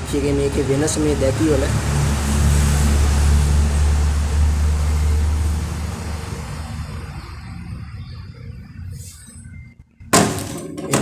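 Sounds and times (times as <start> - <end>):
vehicle engine hum passing: 0.0 - 10.1
road noise: 0.0 - 11.0.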